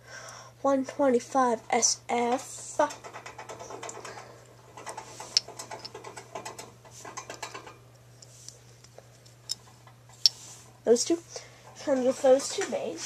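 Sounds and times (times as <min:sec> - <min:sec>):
plastic parts clicking and rattling: 0:02.8 - 0:07.8.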